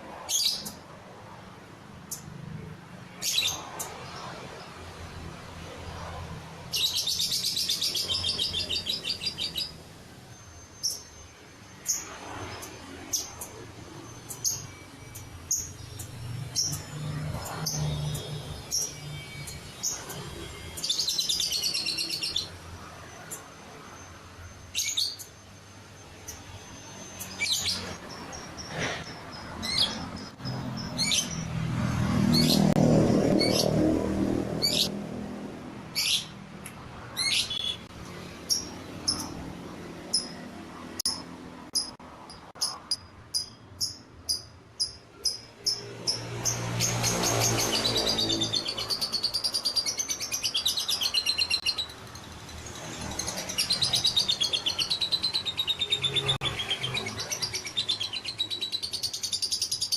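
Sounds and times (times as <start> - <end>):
bird trilling and chirping: 0.2 - 0.8, 3.1 - 4.4, 6.6 - 33.8, 34.6 - 34.9, 35.9 - 36.4, 37.0 - 59.9.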